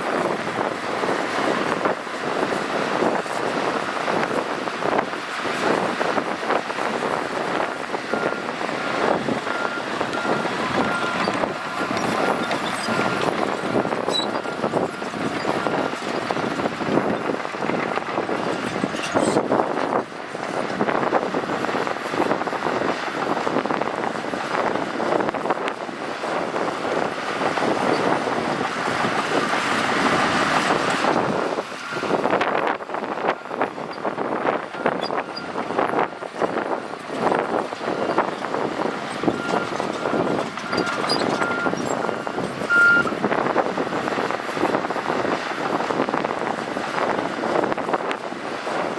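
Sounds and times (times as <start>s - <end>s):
bulldozer engine running: 0.0s - 48.9s
steel tracks clanking and squealing: 0.0s - 48.9s
reversing alarm beeping: 7.5s - 16.5s, 34.8s - 43.2s.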